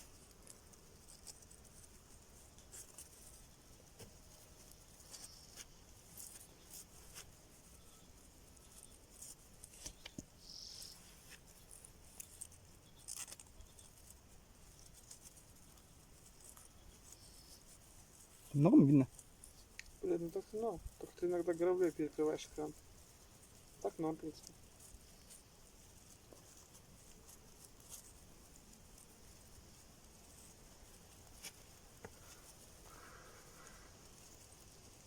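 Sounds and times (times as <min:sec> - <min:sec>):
faint clicks and ticks: 0:00.0 - 0:35.0.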